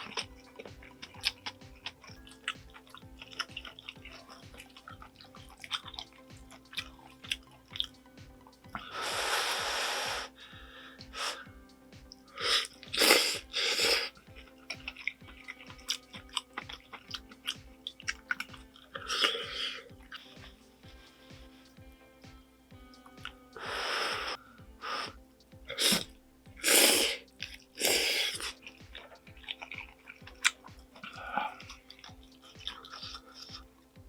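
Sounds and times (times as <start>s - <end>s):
wet chewing and mouth clicks: 0.0s - 8.8s, 12.0s - 21.5s, 25.6s - 33.8s
noodle slurping: 12.4s - 20.3s, 23.6s - 33.7s.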